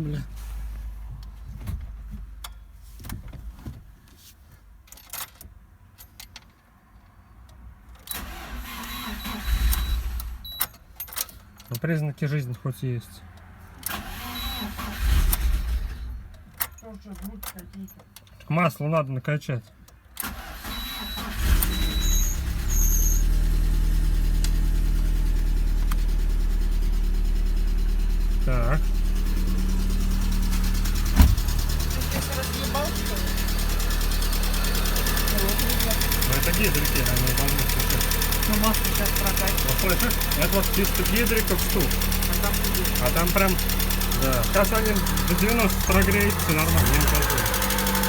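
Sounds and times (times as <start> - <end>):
engine cranking by starter: 8.0 - 10.6, 13.8 - 16.3, 20.2 - 48.0.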